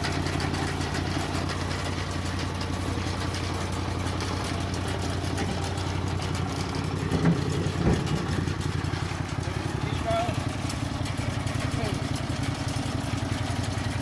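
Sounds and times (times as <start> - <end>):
sawmill engine idling: 0.0 - 14.0
loud knocks: 7.0 - 8.5.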